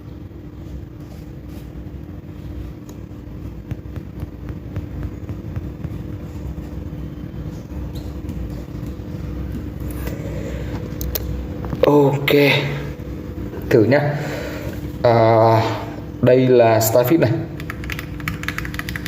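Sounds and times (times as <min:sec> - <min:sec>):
constant hum: 0:00.0 - 0:19.0.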